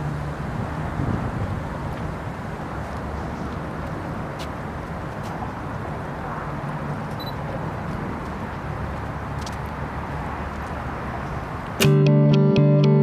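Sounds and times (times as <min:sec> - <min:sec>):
low outdoor background rumble: 0:00.0 - 0:11.8
brief high beep: 0:07.2 - 0:07.4.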